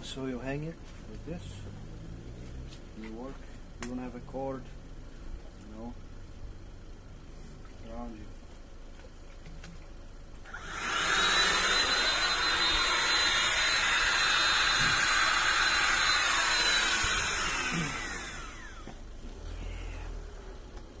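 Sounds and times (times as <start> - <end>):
vacuum cleaner motor whine: 10.5 - 20.3.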